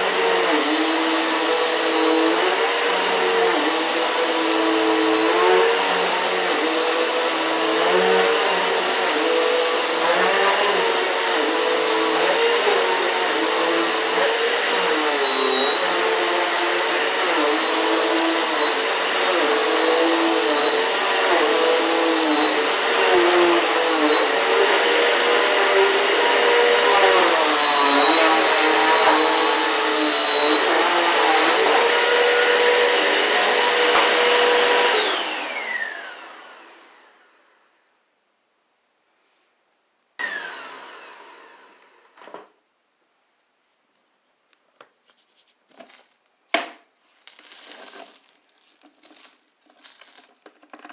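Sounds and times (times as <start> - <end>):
upright vacuum cleaner running: 0.0 - 37.6, 40.2 - 42.5.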